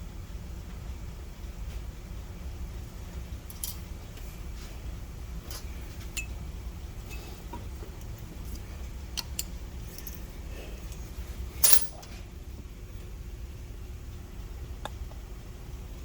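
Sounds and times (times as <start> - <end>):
low steady hum: 0.0 - 16.0
metal tools clicking and clinking: 3.5 - 3.8, 9.2 - 12.2.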